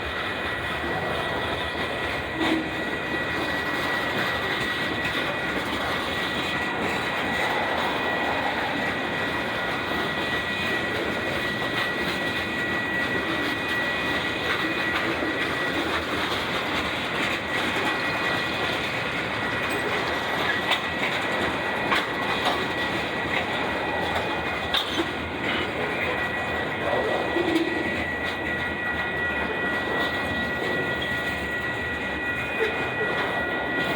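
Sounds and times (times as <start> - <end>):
freight train rumbling past: 0.0 - 33.9
wheels clicking over rail joints: 0.0 - 33.9.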